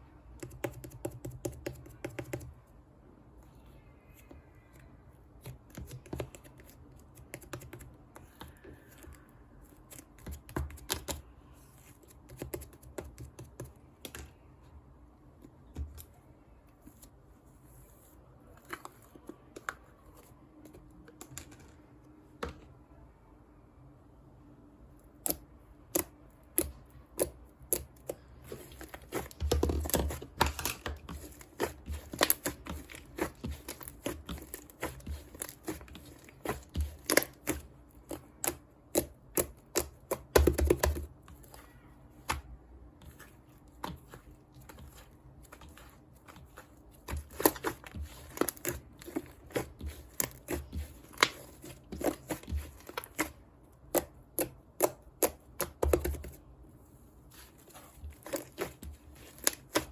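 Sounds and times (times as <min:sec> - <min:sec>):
crinkling handling noise: 0:28.1 - 0:38.3, 0:40.9 - 0:54.5, 0:55.1 - 0:59.9.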